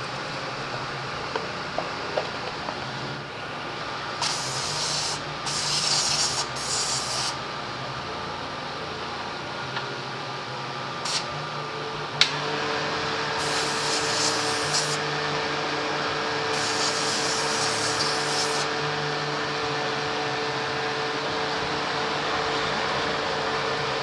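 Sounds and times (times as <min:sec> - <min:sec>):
electric motor running: 0:04.1 - 0:07.4, 0:11.1 - 0:24.0
hissing bursts: 0:04.2 - 0:07.4, 0:11.0 - 0:11.3, 0:13.4 - 0:15.0, 0:16.5 - 0:18.7.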